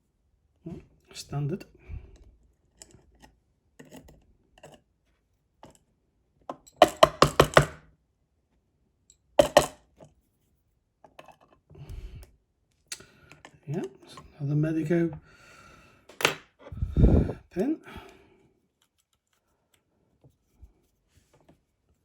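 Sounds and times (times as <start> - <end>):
sharp knocks on hard surface: 6.8 - 7.8.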